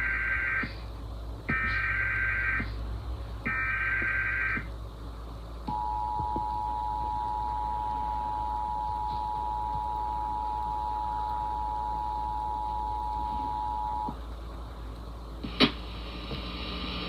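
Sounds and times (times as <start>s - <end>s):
low hum: 0.0s - 17.0s
two-tone attention signal: 5.7s - 14.1s.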